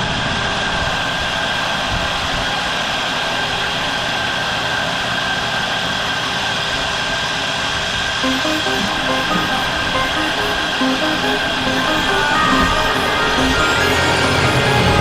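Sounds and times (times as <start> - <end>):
high steady tone: 8.2 - 15.0.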